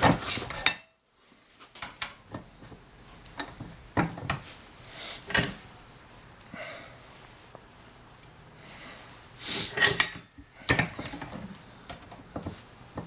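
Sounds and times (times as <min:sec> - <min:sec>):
wire rack clicking and knocking: 0:01.8 - 0:04.5, 0:09.8 - 0:13.0.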